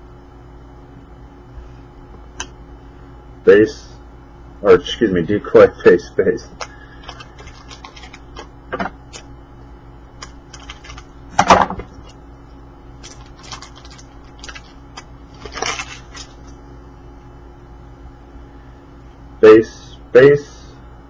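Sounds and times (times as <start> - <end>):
cards rustling swipes: 6.6 - 8.5, 10.2 - 11.1, 13.0 - 16.6.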